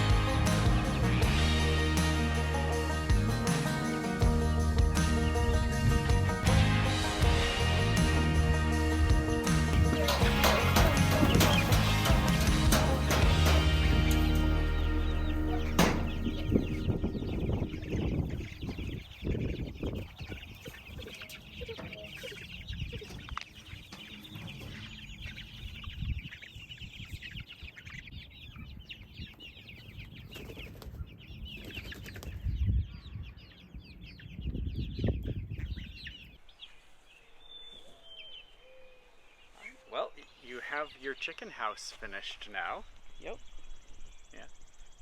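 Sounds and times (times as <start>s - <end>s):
low thumps and rumble: 0.0s - 19.5s
chicks cheeping and clucking: 0.0s - 45.0s
wings flapping: 9.5s - 14.4s, 30.3s - 32.4s.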